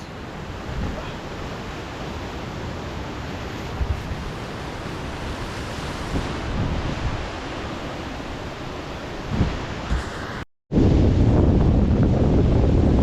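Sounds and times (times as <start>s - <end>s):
mountain stream rushing: 0.0s - 10.4s
wind bumps on microphone: 3.7s - 7.4s, 9.2s - 13.0s.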